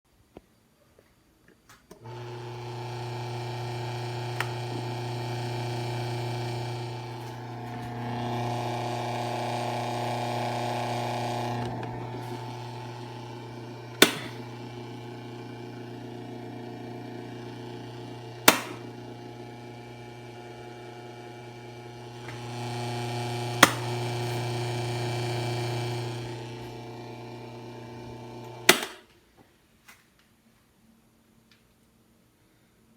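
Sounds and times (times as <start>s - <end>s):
electric fan buzzing and rattling: 2.0s - 29.0s
fan switch clicking: 18.4s - 18.8s.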